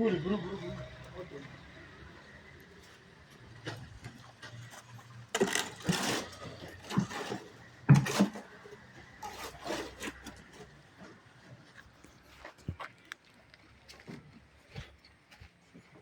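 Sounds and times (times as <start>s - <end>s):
building work scraping: 3.6s - 12.8s.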